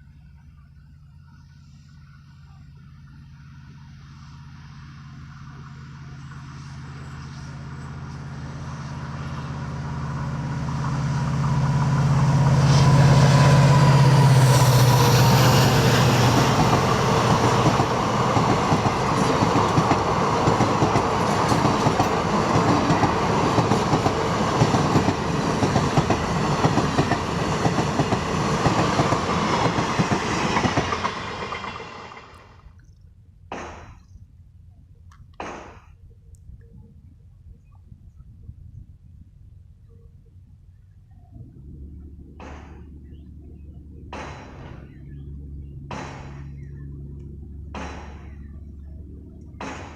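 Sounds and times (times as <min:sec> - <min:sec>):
diesel locomotive engine hum: 0:00.0 - 0:33.5, 0:36.0 - 0:49.9
train wheels clattering on bridge: 0:14.3 - 0:32.4.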